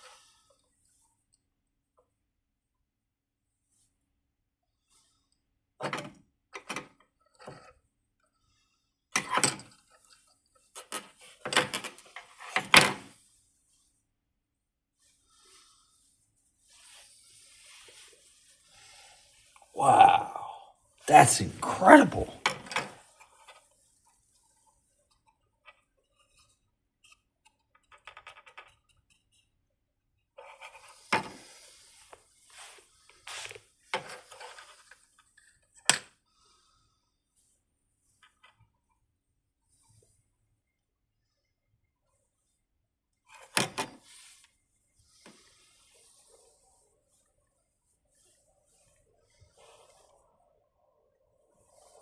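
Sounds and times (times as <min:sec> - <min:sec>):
soft hissing puffs: 0:15.0 - 0:19.7.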